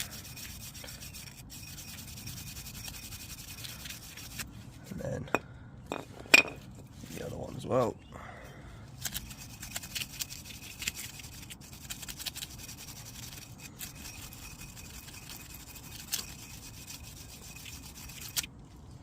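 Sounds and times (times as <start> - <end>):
brush scrubbing rust: 0.0 - 4.9, 9.0 - 18.8.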